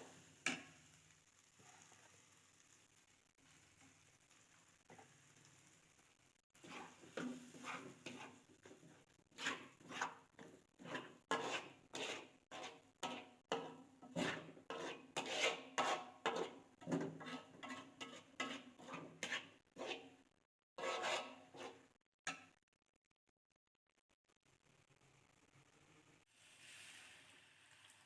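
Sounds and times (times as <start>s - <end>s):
food scraping strokes: 6.6s - 20.1s, 20.8s - 21.9s.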